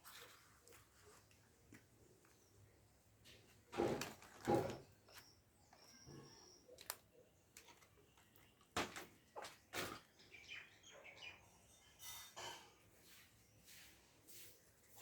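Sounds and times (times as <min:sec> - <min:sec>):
faint high chirps: 0:05.1 - 0:08.7
wiring connectors clicking and rustling: 0:06.7 - 0:10.0.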